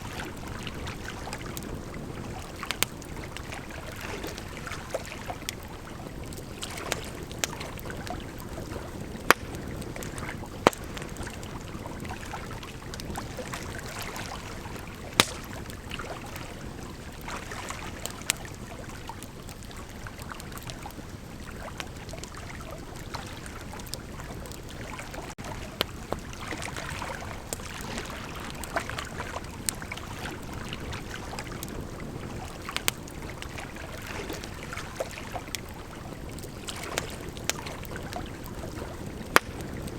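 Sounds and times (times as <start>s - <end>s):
burning wood popping: 0.2s - 11.8s, 14.6s - 16.1s, 32.5s - 39.9s.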